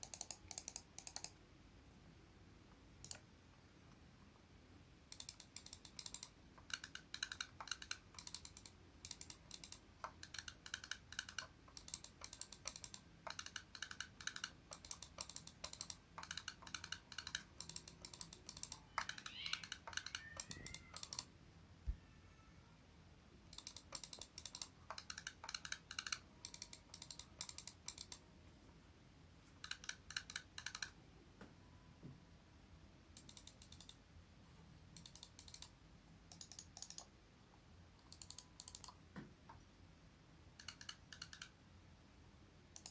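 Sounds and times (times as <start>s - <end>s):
mouse buttons clicking: 0.0s - 1.4s, 5.1s - 21.3s, 23.5s - 28.2s, 29.6s - 31.0s, 35.0s - 35.7s, 36.3s - 37.1s, 38.0s - 39.0s, 40.6s - 41.6s.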